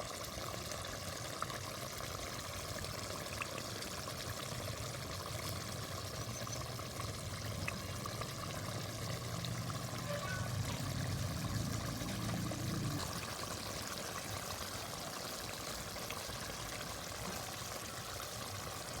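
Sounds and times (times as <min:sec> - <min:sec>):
low hum: 0:08.4 - 0:13.2.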